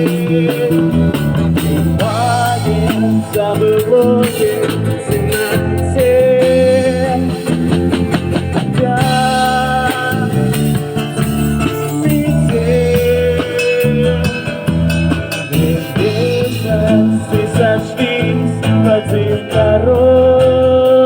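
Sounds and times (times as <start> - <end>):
band playing a song: 0.0 - 21.0.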